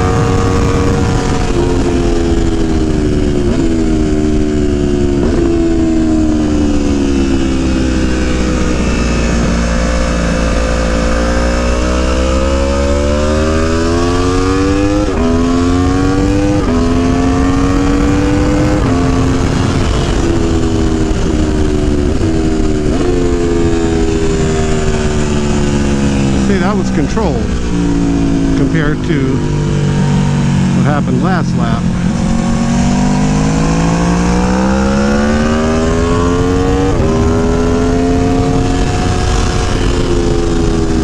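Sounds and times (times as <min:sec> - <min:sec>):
wind rushing: 0:00.0 - 0:06.1, 0:14.2 - 0:28.6, 0:31.6 - 0:41.0
motorcycle engine revving through gears: 0:00.0 - 0:41.0.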